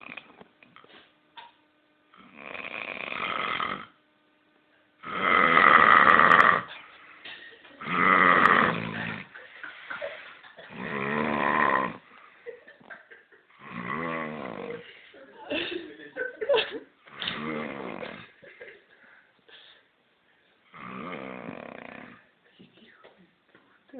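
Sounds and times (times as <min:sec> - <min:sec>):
man snoring loudly: 0:00.0 - 0:00.4, 0:02.1 - 0:04.0, 0:05.0 - 0:06.9, 0:07.8 - 0:09.4, 0:10.7 - 0:12.2, 0:13.5 - 0:14.8, 0:17.1 - 0:18.4, 0:20.7 - 0:22.3.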